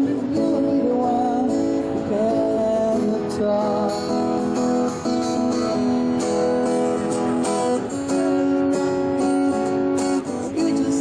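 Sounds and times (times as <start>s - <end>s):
acoustic guitar strumming: 0.0s - 11.0s.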